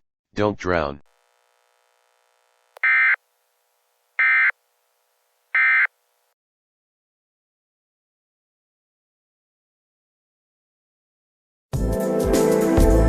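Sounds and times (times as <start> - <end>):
short data tone bursts: 2.8 - 3.2, 4.2 - 4.6, 5.5 - 6.0.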